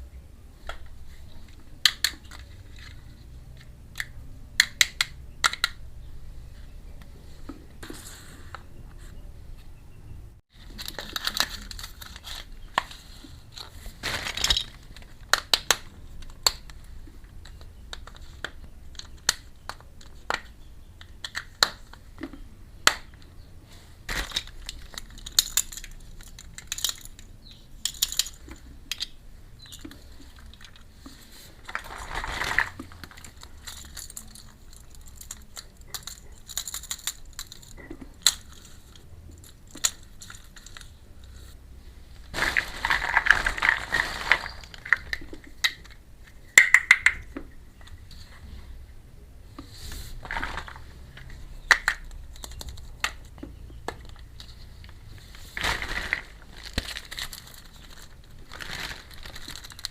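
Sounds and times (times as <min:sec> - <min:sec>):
plastic toy pieces clicking: 0:03.9 - 0:05.8, 0:24.1 - 0:30.8, 0:31.7 - 0:41.0, 0:50.4 - 0:54.5
packaging crinkling: 0:10.6 - 0:16.8, 0:28.0 - 0:41.0, 0:42.2 - 0:45.9, 0:50.1 - 0:59.9.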